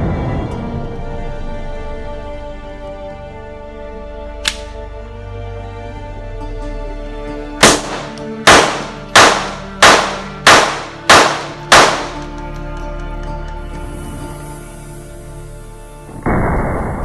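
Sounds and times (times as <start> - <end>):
background music: 0.0 - 17.0
handgun shots with echo: 4.4 - 4.8, 7.6 - 12.4.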